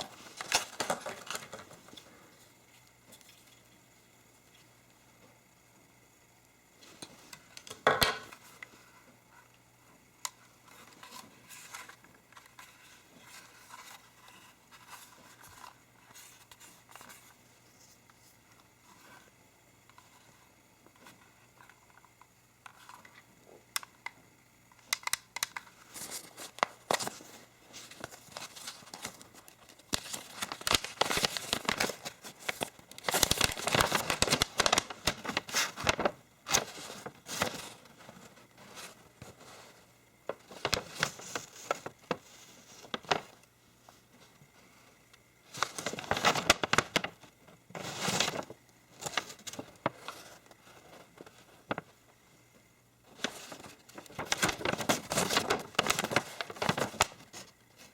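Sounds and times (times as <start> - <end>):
plastic wrapping crinkling and tearing: 0.0 - 2.0, 24.9 - 39.5, 40.3 - 43.4, 45.5 - 51.9, 53.1 - 57.6.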